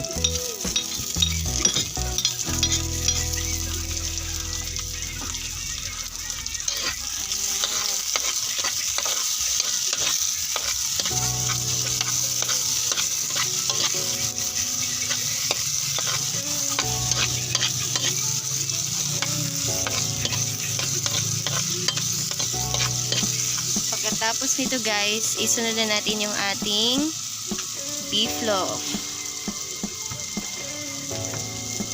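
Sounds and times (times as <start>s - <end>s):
food sizzling in oil: 0.0s - 31.9s
spatula scraping a pan: 6.5s - 18.3s, 19.2s - 24.1s.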